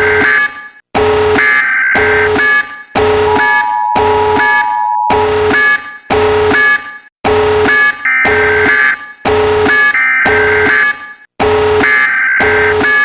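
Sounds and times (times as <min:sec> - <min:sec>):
buzzy multi-tone alarm: 0:00.0 - 0:13.0
two-note attention tone: 0:03.2 - 0:05.4.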